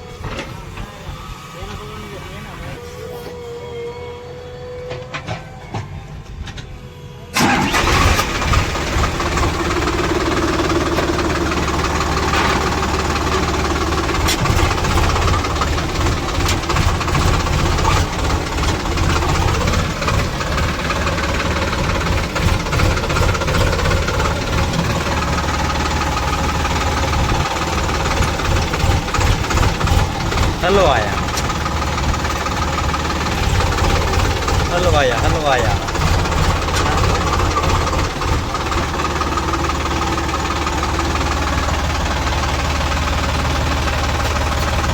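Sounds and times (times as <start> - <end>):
heavy diesel engine running: 0.0 - 44.9.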